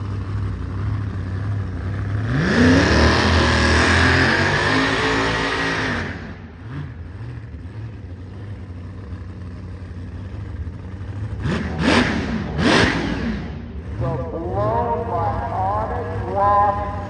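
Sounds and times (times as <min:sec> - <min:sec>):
drag car engine rumbling: 0:00.0 - 0:17.0
engine revving: 0:00.0 - 0:17.0.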